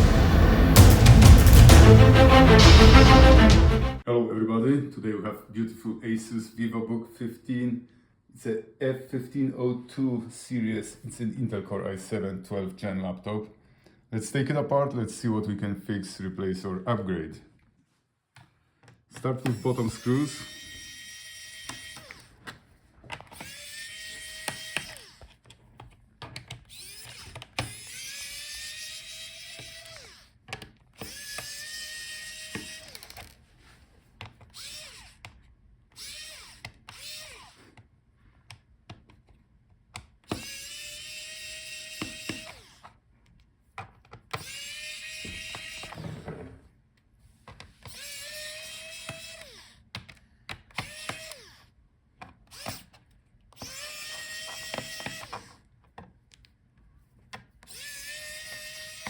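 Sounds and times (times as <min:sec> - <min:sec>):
electric screwdriver whining: 0:19.2 - 0:25.6, 0:26.2 - 0:33.6, 0:34.3 - 0:37.8, 0:40.0 - 0:43.0, 0:44.3 - 0:46.5, 0:47.7 - 0:51.8, 0:52.4 - 0:55.7, 0:57.6 - 0:59.0.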